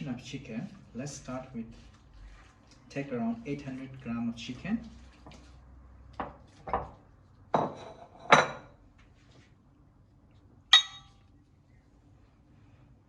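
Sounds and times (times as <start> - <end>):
kitchenware knocks: 7.6 - 8.7
ringing clink of a dish: 10.7 - 11.2.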